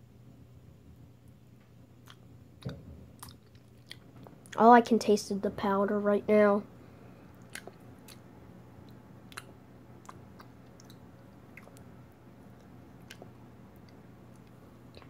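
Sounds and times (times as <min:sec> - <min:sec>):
steady low hum: 0:00.0 - 0:15.0
person chewing candy: 0:03.2 - 0:04.6, 0:07.3 - 0:15.0.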